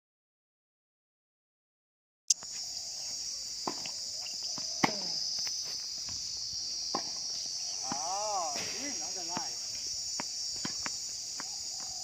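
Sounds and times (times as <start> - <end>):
insects buzzing: 2.3 - 12.0.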